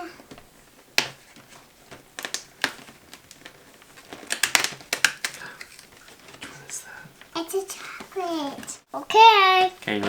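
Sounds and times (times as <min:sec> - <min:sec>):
cardboard clicks and snaps: 0:00.3 - 0:06.5.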